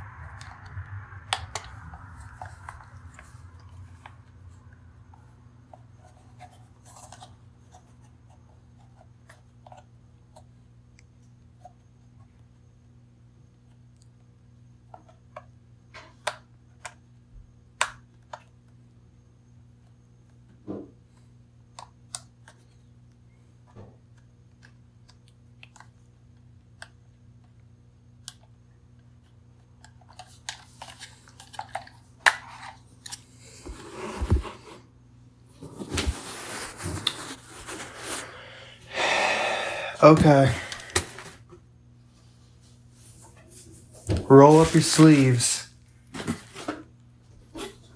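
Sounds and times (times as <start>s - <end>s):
faint low hum: 0.0s - 47.9s
rustling packaging: 35.8s - 38.8s.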